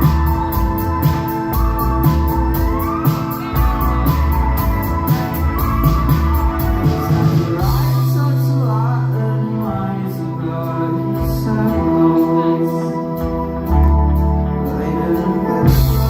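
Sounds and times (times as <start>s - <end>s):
drum beat: 0.0s - 8.0s
person singing: 0.0s - 16.0s
rock band playing live: 0.0s - 16.0s.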